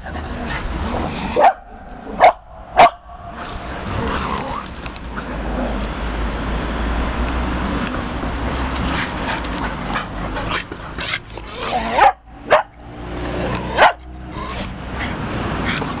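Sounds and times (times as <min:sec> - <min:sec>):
dog barking: 0:01.4 - 0:03.1, 0:11.9 - 0:12.8, 0:13.8 - 0:14.1.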